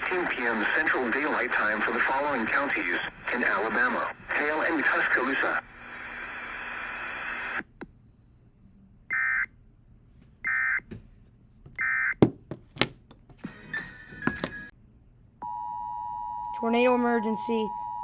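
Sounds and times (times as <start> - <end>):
static hiss: 0.1 - 7.6.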